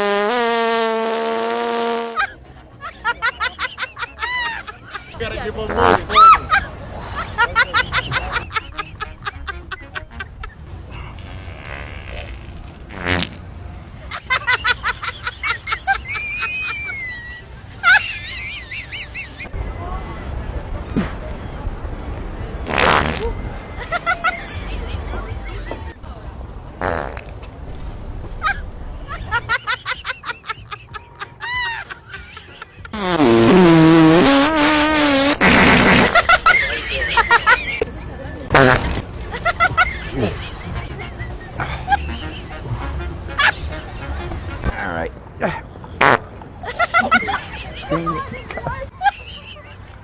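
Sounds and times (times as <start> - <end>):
fart sound: 0.0 - 2.2, 10.9 - 13.4, 22.6 - 23.4, 26.8 - 27.3, 32.9 - 36.6, 38.5 - 39.0, 46.0 - 46.3.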